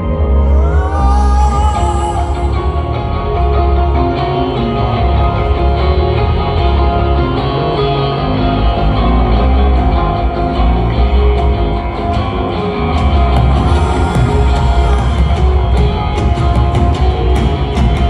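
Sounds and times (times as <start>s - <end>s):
distorted electric guitar: 0.0s - 18.0s
rock band playing live: 0.0s - 18.0s.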